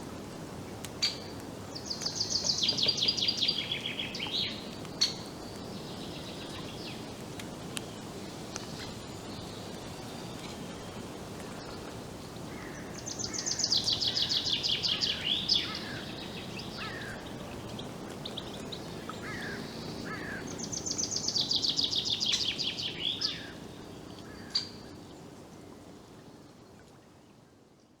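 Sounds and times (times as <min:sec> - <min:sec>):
steady low hiss: 0:00.0 - 0:28.0
songbird singing falling notes: 0:01.0 - 0:07.0.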